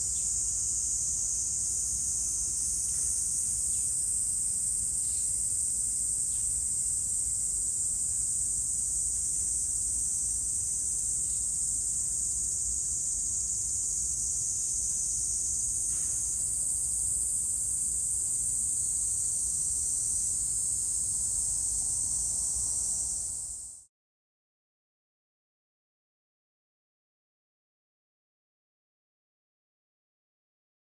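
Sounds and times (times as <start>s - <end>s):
cicadas chorus: 0.0s - 23.9s.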